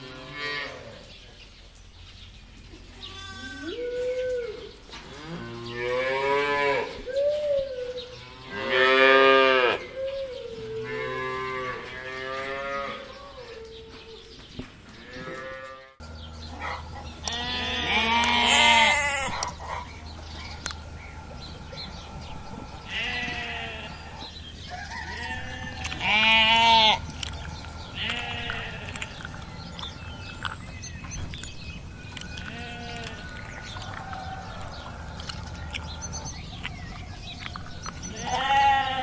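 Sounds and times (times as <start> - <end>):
cattle mooing: 17.3 - 19.5, 22.8 - 24.4, 27.9 - 30.4, 38.0 - 39.0.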